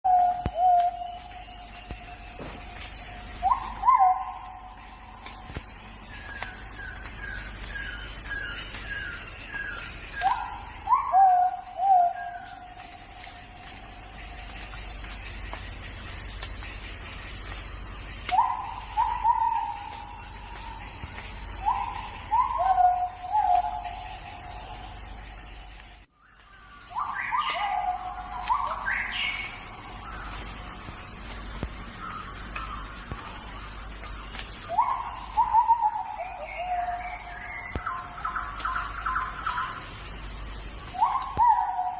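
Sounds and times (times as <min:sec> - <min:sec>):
high insect drone: 0:00.1 - 0:41.9
bird calling: 0:02.4 - 0:14.0, 0:17.5 - 0:25.5, 0:26.9 - 0:30.4, 0:34.2 - 0:39.8, 0:41.0 - 0:41.9.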